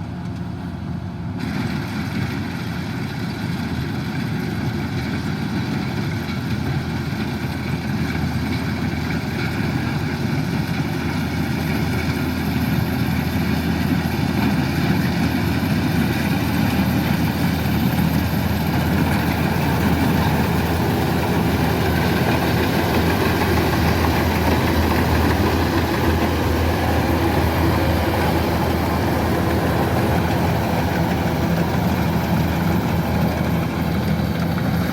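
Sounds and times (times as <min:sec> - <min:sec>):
harvester engine running: 0:00.0 - 0:34.9.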